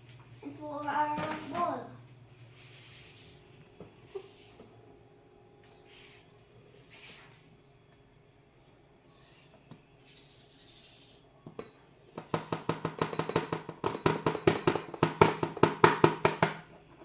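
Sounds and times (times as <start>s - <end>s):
utensil clinking on mixing bowl: 11.6s - 16.5s.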